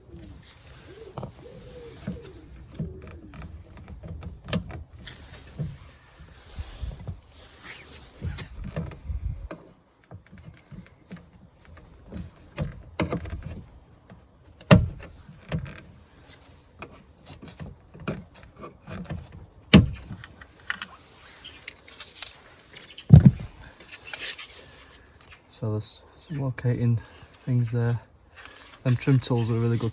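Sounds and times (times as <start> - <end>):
sharp knocks: 23.1 - 23.5.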